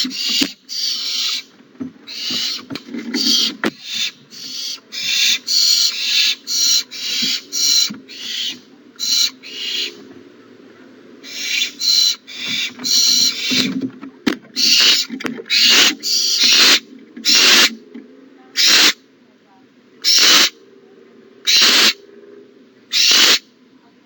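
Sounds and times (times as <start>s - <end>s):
owl nestlings hissing: 0.0s - 1.5s, 2.1s - 10.1s, 11.2s - 13.7s, 14.6s - 17.8s, 18.6s - 19.0s, 20.0s - 20.6s, 21.4s - 22.0s, 22.9s - 23.5s.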